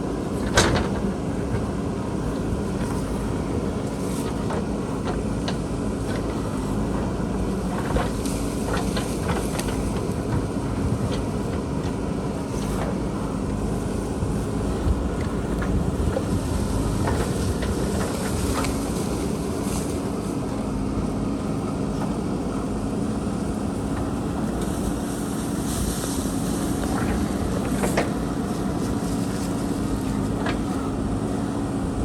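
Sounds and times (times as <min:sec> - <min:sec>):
diesel engine running under load: 0:00.0 - 0:32.0.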